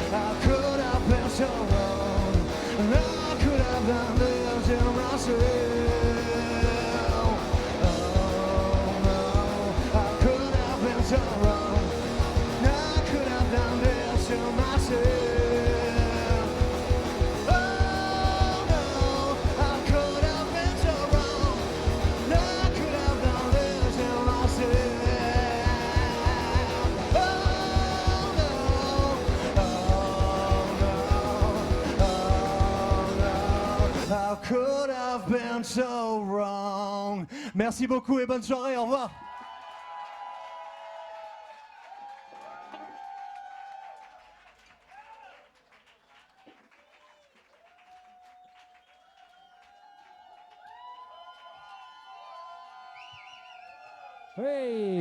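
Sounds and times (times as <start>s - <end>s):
live rock band playing: 0.0s - 34.4s
person singing: 0.0s - 37.7s.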